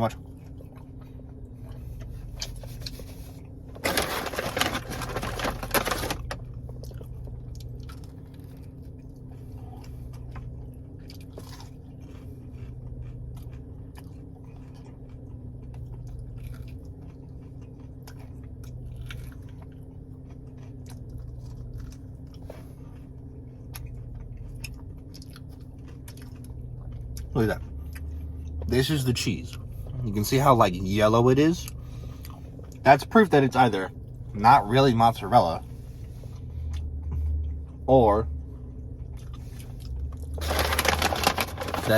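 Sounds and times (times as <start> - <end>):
chewing crispy food: 0.0 - 41.9
steady low hum: 0.0 - 41.9
crunches of crispy breading: 39.2 - 41.9.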